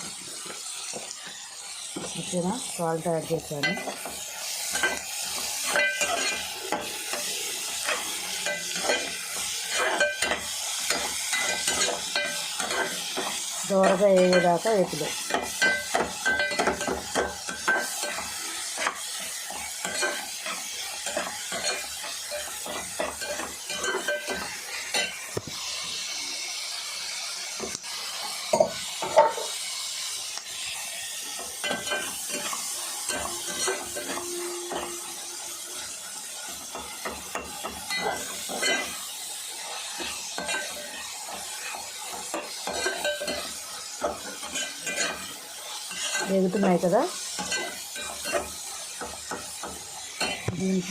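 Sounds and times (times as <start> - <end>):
onions sizzling in oil: 0.0 - 50.9
utensil scraping a pan: 3.5 - 25.2, 31.2 - 48.5.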